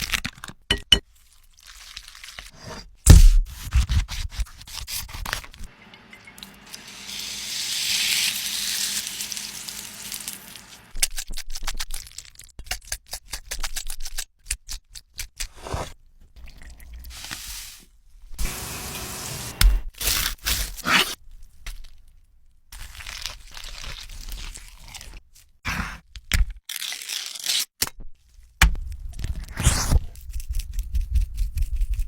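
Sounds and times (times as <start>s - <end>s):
cooking hiss: 5.8s - 10.9s, 18.4s - 19.8s.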